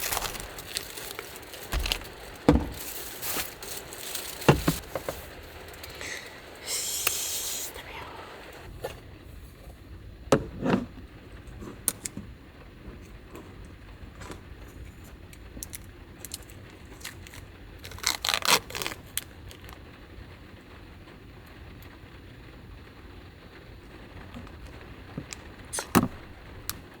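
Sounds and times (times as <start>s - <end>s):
rustling and clattering: 0.0s - 6.0s.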